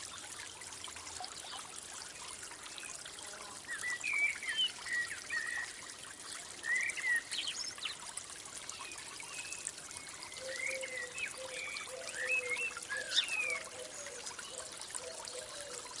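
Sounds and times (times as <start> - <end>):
water trickling: 0.0 - 16.0
birds chirping: 8.9 - 15.8.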